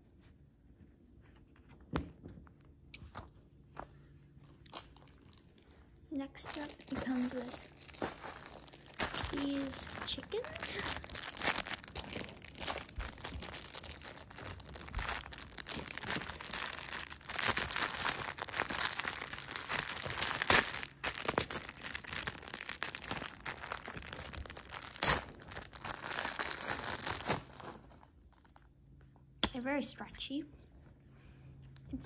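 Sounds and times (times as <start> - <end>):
plastic packaging crinkling and tearing: 4.4 - 28.6.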